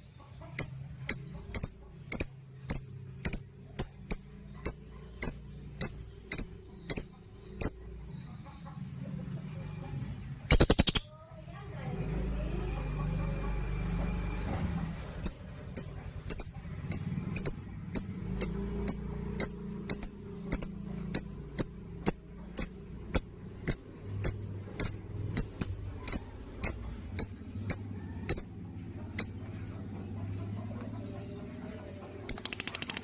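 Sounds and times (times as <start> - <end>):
bird giving sharp high chirps: 0.6 - 7.8, 10.5 - 11.1, 15.2 - 28.6.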